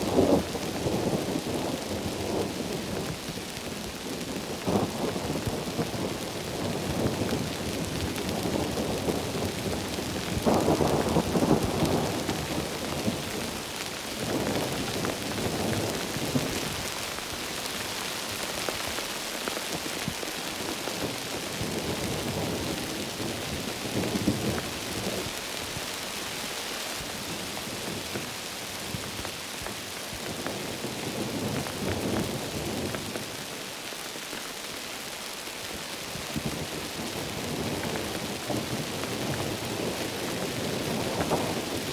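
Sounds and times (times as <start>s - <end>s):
heavy rain: 0.0s - 41.9s
rolling thunder rumbles: 4.6s - 13.6s.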